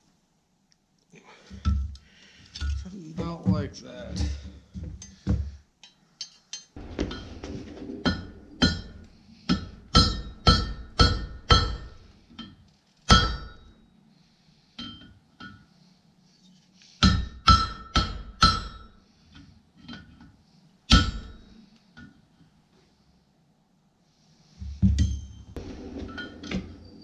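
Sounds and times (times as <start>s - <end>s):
hammer striking steel on anvil: 8.6s - 12.0s, 13.1s - 13.8s, 17.0s - 19.0s, 20.9s - 21.4s.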